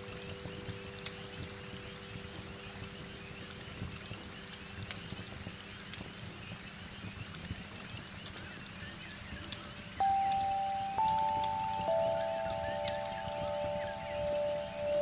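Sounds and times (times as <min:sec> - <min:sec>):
heavy rain: 0:00.0 - 0:15.0
wood fire crackling: 0:00.0 - 0:15.0
singing bowl tone: 0:10.0 - 0:15.0.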